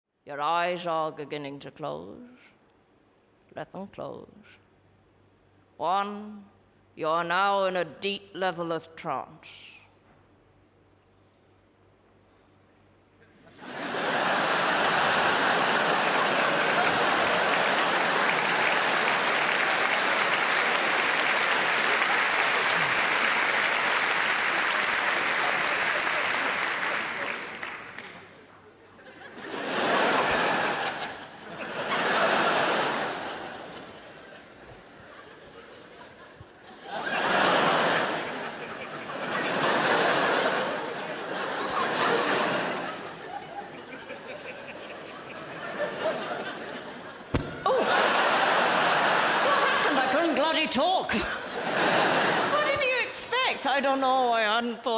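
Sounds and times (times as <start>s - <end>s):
audience laughing: 13.2s - 53.2s
crowd noise: 13.3s - 54.2s
audience applauding: 13.6s - 28.4s.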